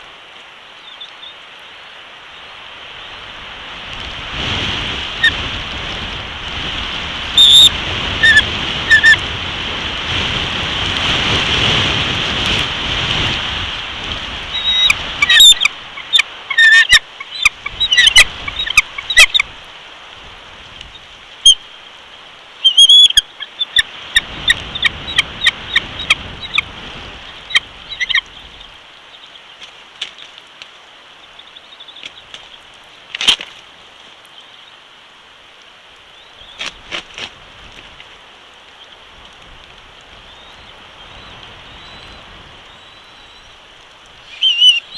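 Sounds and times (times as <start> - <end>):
rain: 0.0 - 44.9
wind buffeting microphone: 3.2 - 16.0, 17.4 - 21.2, 23.9 - 28.8
eagle chittering calls: 7.4 - 9.2, 14.5 - 19.5, 22.6 - 29.4, 44.2 - 44.9.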